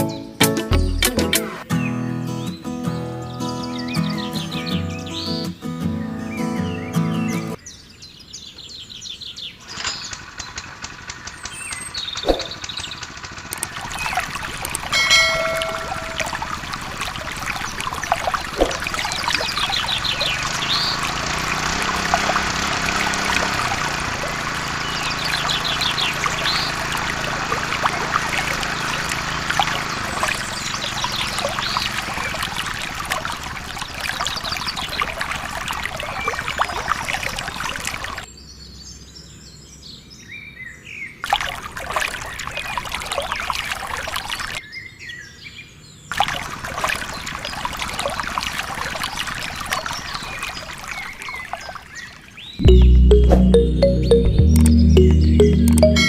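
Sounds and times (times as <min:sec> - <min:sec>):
birds chirping and singing: 0:01.7 - 0:09.6.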